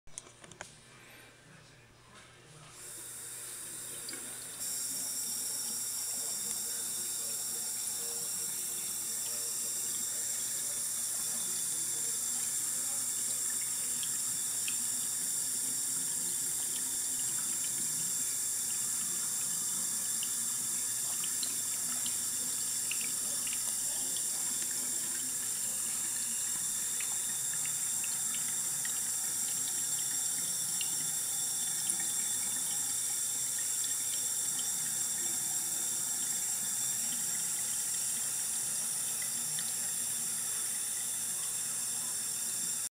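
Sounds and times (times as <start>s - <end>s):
faucet running water: 2.8s - 42.9s.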